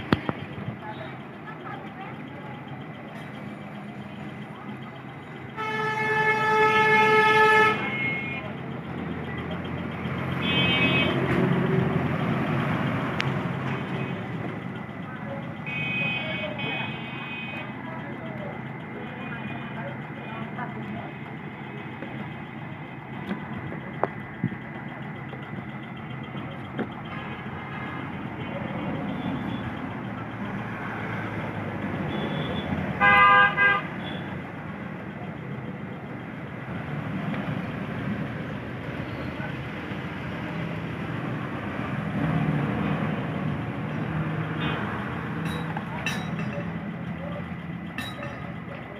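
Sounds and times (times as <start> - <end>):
road traffic noise: 0.0 - 48.9
car horn toot: 5.6 - 8.5, 10.4 - 11.3, 15.6 - 17.7, 32.1 - 34.3.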